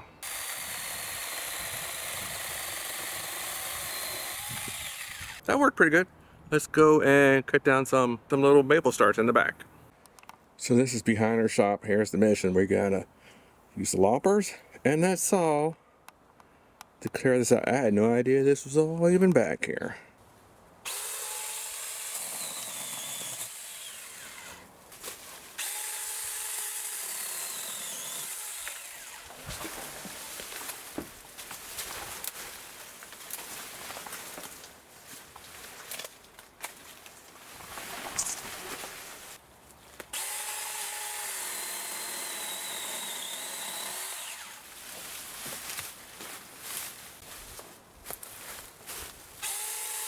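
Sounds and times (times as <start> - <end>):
electric chainsaw cutting saplings: 0.2 - 5.4, 20.9 - 24.7, 25.4 - 31.1, 40.1 - 44.8, 49.4 - 50.0.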